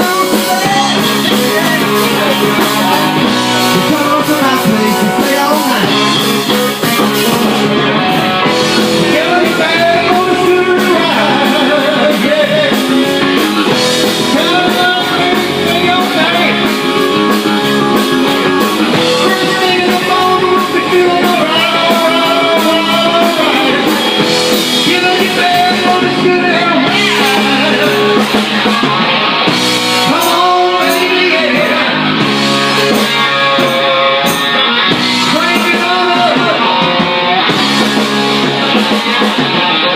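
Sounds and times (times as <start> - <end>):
person singing: 0.0 - 29.2
electric guitar: 0.0 - 39.9
rock band playing: 0.0 - 39.9.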